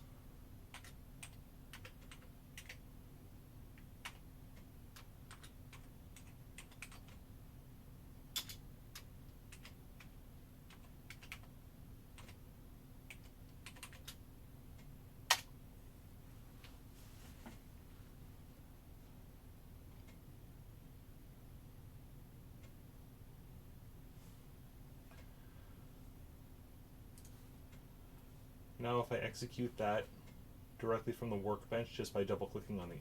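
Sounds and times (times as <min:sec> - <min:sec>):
faint steady hum: 0:00.0 - 0:33.0
keyboard clicks: 0:00.7 - 0:02.8, 0:03.8 - 0:07.2, 0:08.3 - 0:11.5, 0:12.2 - 0:12.4, 0:13.1 - 0:14.2.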